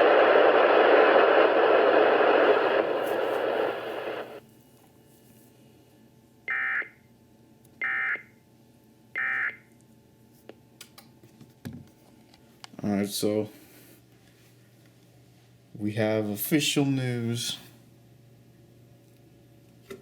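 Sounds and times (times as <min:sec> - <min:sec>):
radio static hiss: 0:00.0 - 0:04.4.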